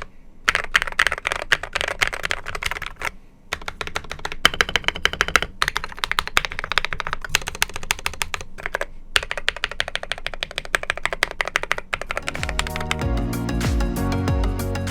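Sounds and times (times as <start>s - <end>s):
fast typing on mechanical keyboard: 0.0s - 13.1s
music: 12.2s - 14.9s.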